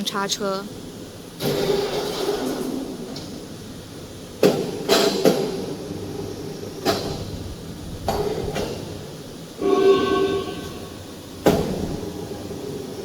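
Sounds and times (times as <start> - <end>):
workshop background noise: 0.0 - 13.0.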